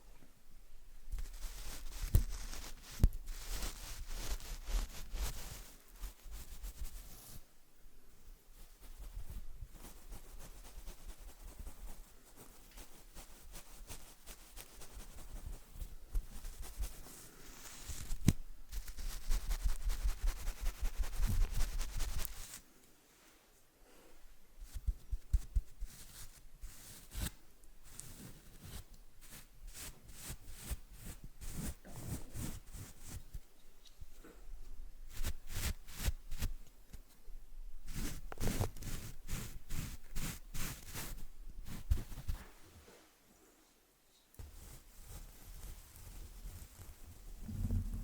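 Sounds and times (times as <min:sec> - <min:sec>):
brush bristles crackling rustle: 0:01.2 - 0:05.4
paintbrush bristles swishing: 0:01.2 - 0:07.4, 0:08.8 - 0:22.6, 0:24.6 - 0:33.4, 0:35.1 - 0:36.6, 0:37.9 - 0:42.8.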